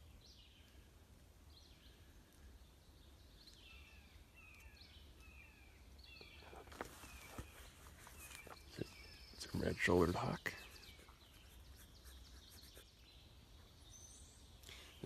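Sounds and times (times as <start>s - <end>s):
other birds calling softly: 0.0s - 15.0s
distant bird singing short phrases: 3.0s - 15.0s.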